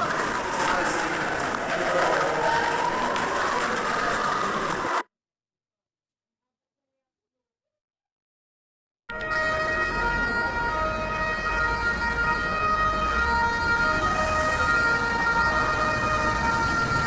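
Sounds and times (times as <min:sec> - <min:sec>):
ambulance siren wailing: 0:00.0 - 0:05.0, 0:09.1 - 0:17.0.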